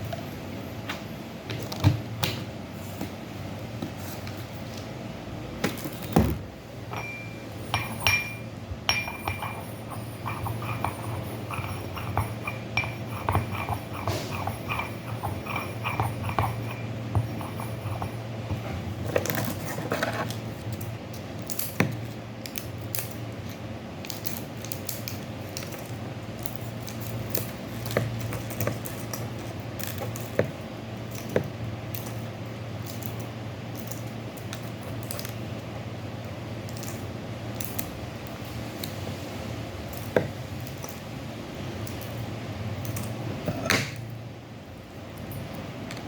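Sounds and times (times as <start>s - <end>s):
steady low hum: 0.0s - 46.0s
small utensils tapping and clicking: 6.9s - 19.6s.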